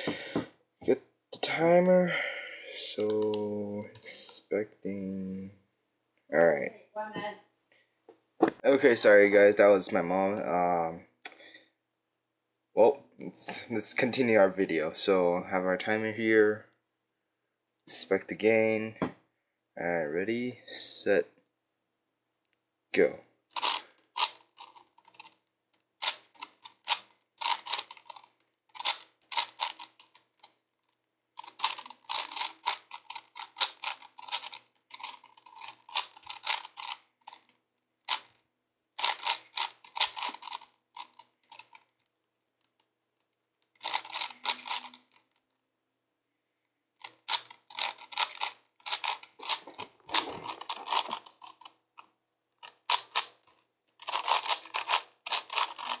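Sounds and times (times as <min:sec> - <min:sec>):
puzzle cube clicking twists: 0:23.5 - 0:38.4, 0:39.0 - 0:45.4, 0:47.0 - 0:56.0.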